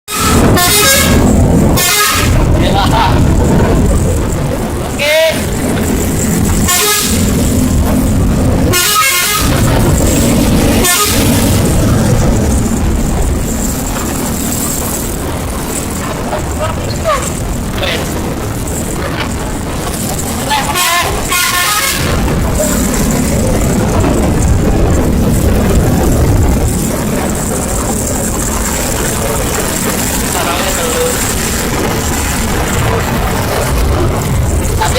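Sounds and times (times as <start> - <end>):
multi-tone musical truck horn: 0.1 - 2.5, 6.5 - 7.5, 8.6 - 11.7, 20.6 - 22.3
truck engine running: 0.1 - 34.9.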